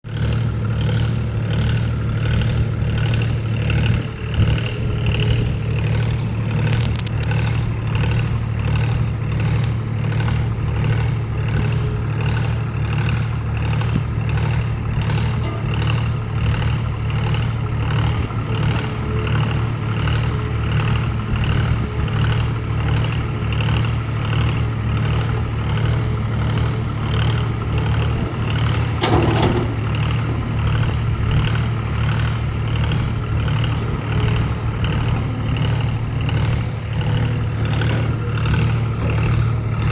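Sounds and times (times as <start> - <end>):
excavator diesel engine running: 0.1 - 39.9.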